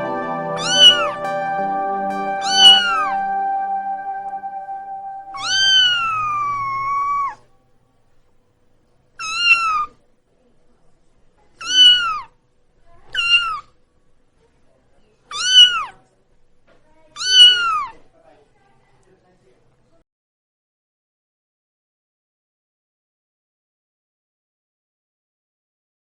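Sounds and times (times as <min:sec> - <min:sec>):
cat meowing: 0:05.4 - 0:07.3, 0:11.6 - 0:12.2, 0:15.3 - 0:15.9, 0:17.2 - 0:17.9.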